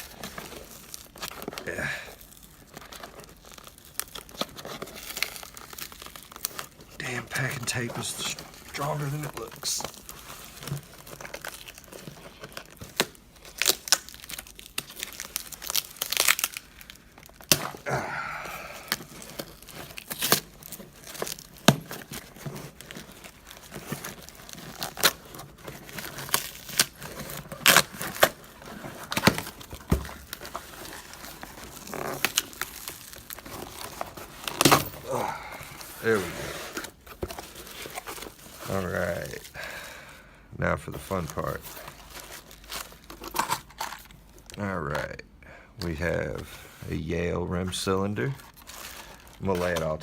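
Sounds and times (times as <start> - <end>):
tape and box crinkling: 0.0 - 17.9, 18.6 - 39.6, 40.9 - 44.6, 47.6 - 50.0
packing tape ripping: 0.0 - 39.4.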